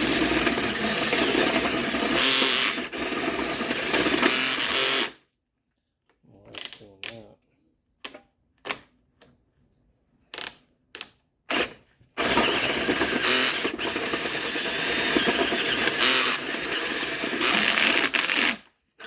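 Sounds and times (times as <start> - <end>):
power drill boring into metal lock: 11.5 - 18.6.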